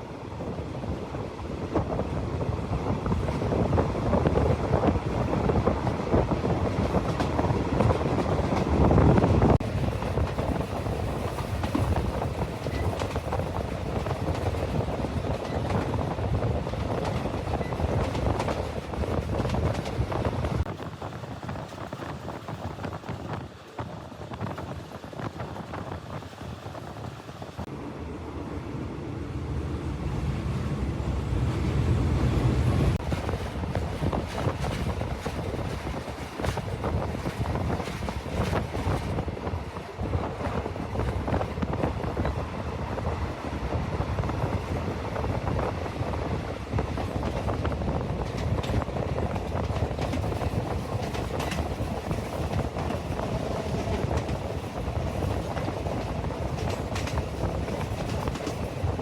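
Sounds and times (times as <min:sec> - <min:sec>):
diesel locomotive engine rumble: 0:00.0 - 0:59.0
train wheels clattering over rail joints: 0:03.0 - 0:20.7, 0:44.2 - 0:59.0.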